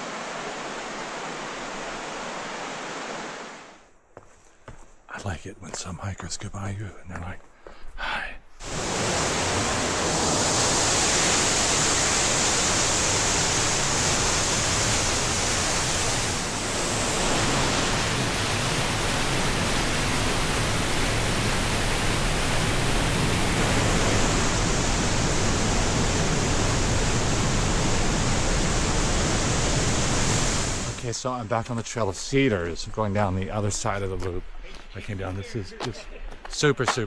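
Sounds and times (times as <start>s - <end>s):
rushing water: 0.0s - 3.8s, 8.6s - 31.2s.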